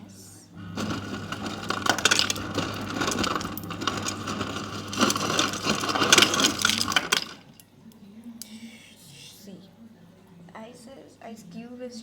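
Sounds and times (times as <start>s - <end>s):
ice clattering down chute: 0.6s - 7.6s
ice crusher motor humming: 0.6s - 7.6s.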